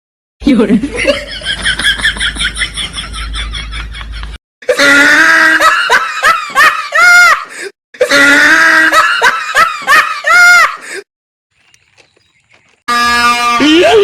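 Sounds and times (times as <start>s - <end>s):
laughter: 0.5s - 11.0s.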